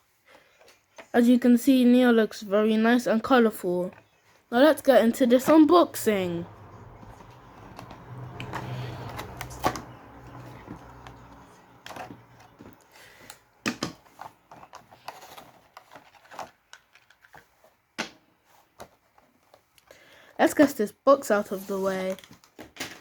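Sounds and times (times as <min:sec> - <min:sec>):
packaging rustling: 0:13.9 - 0:17.8.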